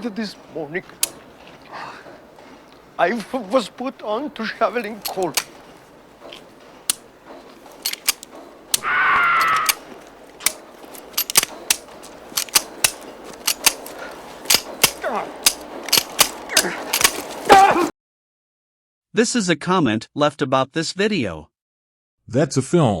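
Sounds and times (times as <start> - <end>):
sharp metallic clicks: 0.8 - 1.3, 3.2 - 17.4.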